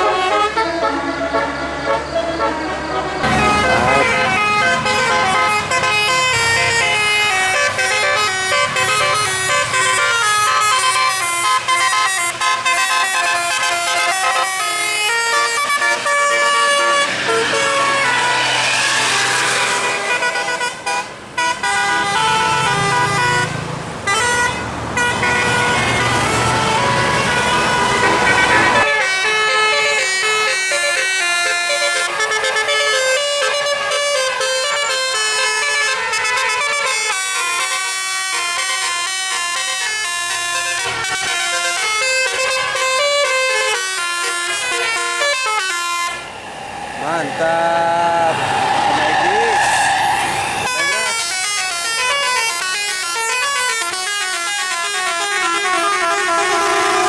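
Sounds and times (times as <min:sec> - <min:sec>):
musical air horn melody: 0:00.0 - 0:23.5, 0:24.1 - 0:57.0
low rumble: 0:46.1 - 0:50.8.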